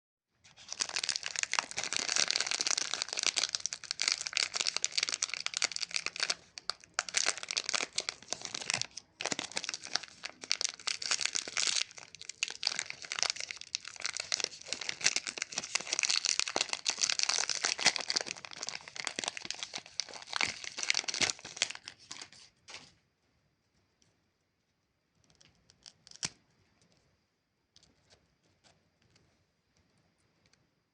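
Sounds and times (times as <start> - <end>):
plastic wrapper crinkling: 0.5 - 22.9.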